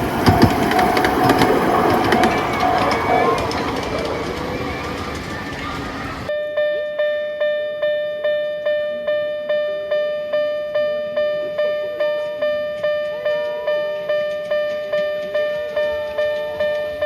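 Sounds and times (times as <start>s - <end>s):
level crossing alarm dinging: 0.0s - 6.3s
steady noise: 0.0s - 6.3s.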